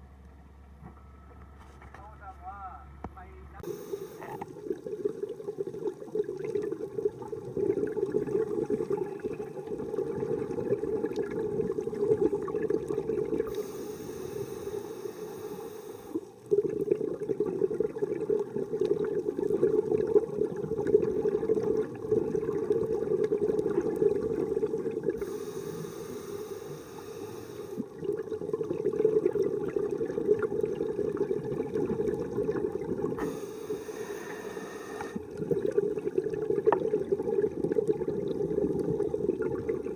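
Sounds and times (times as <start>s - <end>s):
faint regulator hiss: 0.1s - 6.4s, 12.2s - 16.6s, 24.9s - 28.0s, 33.0s - 35.7s
underwater exhaled bubbles: 3.6s - 39.9s.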